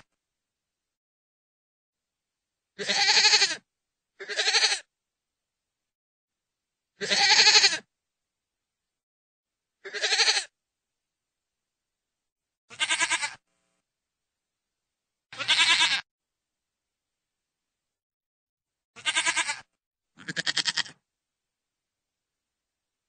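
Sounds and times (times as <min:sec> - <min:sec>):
goat bleating: 0:02.8 - 0:03.6, 0:04.2 - 0:04.9, 0:07.0 - 0:07.8, 0:09.8 - 0:10.5, 0:12.7 - 0:13.4, 0:15.4 - 0:16.0, 0:19.0 - 0:21.0.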